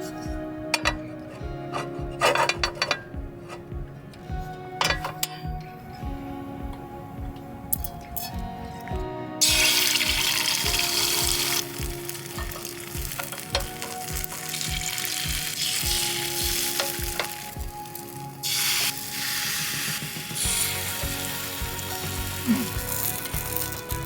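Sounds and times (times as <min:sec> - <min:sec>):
background music with steady beat: 0:00.0 - 0:24.0
food sizzling in a pan: 0:09.4 - 0:24.0.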